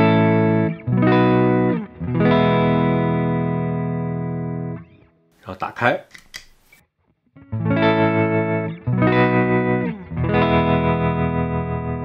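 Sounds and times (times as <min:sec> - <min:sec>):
electric guitar chords with tremolo: 0:00.0 - 0:05.0, 0:07.4 - 0:12.0.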